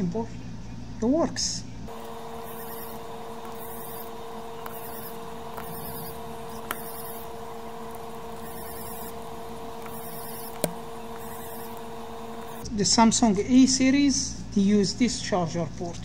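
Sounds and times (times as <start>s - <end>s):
electrical hum: 1.9s - 12.8s.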